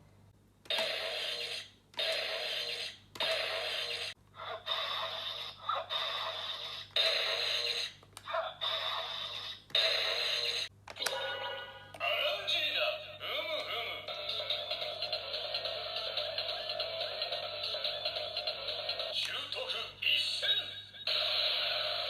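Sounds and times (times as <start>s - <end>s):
toy electronic sound effects: 0.7s - 4.2s, 4.8s - 12.5s.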